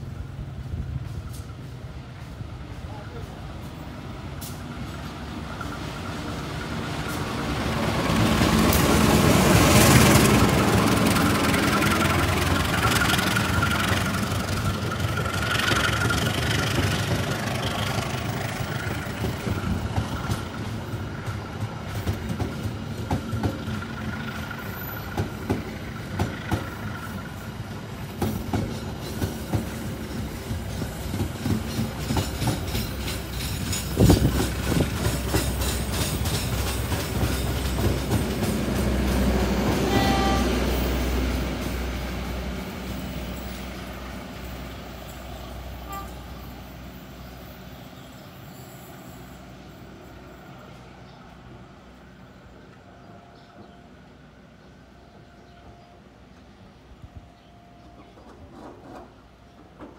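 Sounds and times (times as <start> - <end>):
train rumbling: 0.0 - 59.9
wheels clacking over rail joints: 1.0 - 46.0, 57.9 - 59.9.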